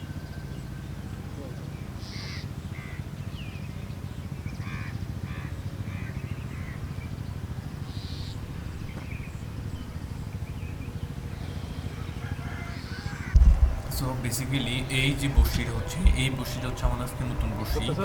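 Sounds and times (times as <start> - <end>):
crows cawing: 1.3 - 10.1, 11.0 - 18.0
low rumble: 13.3 - 18.0.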